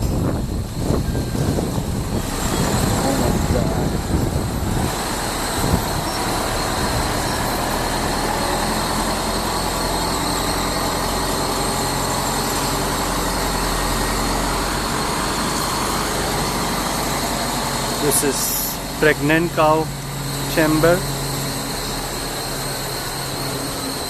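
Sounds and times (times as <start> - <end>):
motor running steadily: 0.0 - 24.0.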